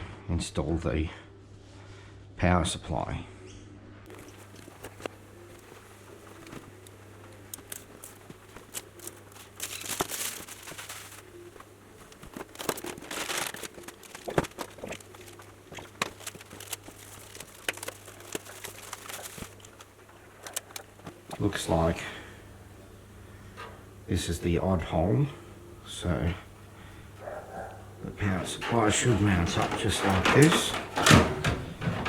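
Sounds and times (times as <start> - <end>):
packaging crinkling: 6.8 - 21.2
handling clicks and knocks: 27.2 - 32.0.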